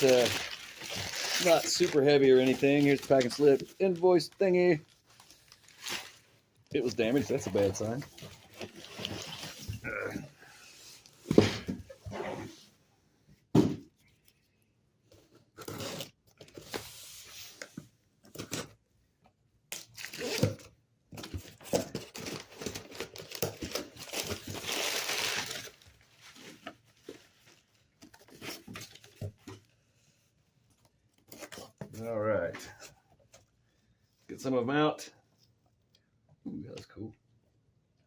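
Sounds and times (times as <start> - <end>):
packing material crinkling: 0.0 - 9.7, 21.9 - 26.4.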